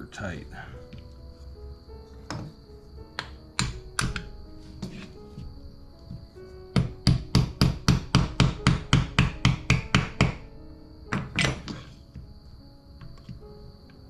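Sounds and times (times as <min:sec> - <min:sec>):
small hammer tapping: 0:03.2 - 0:04.3, 0:06.8 - 0:10.4.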